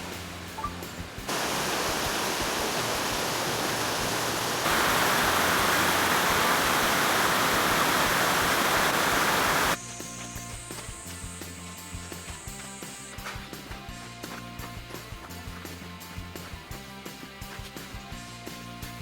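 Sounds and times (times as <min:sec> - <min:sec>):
waterfall rushing: 0:00.4 - 0:09.8.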